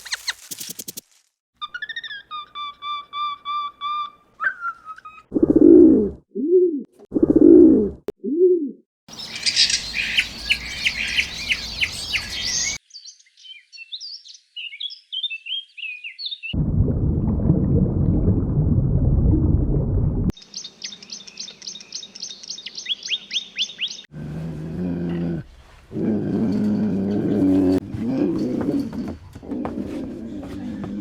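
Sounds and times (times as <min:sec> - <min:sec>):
whistled bird call: 0:01.6 - 0:05.3
dense bird chirping: 0:09.1 - 0:16.6, 0:20.4 - 0:24.1.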